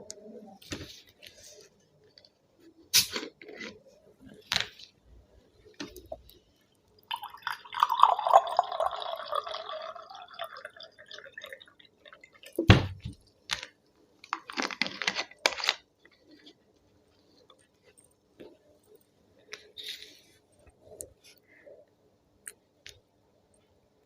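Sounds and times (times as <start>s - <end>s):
cola splashing and fizzing: 7.0s - 13.3s.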